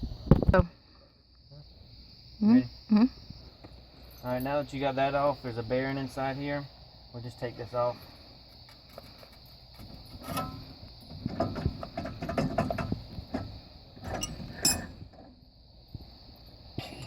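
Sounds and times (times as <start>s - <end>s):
metal clinking and scraping: 8.7s - 15.4s
sharp metal clank: 14.1s - 15.0s.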